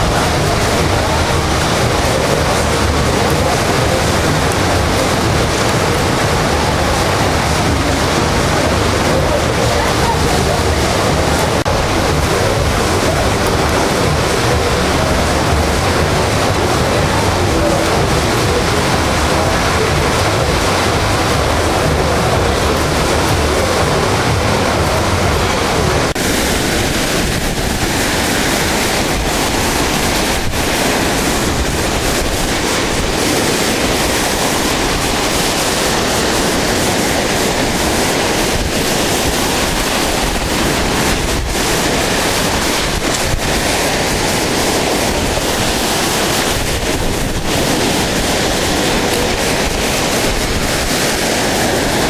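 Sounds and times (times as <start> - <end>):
floodwater rushing: 0.0 - 52.0
wind buffeting microphone: 0.0 - 52.0.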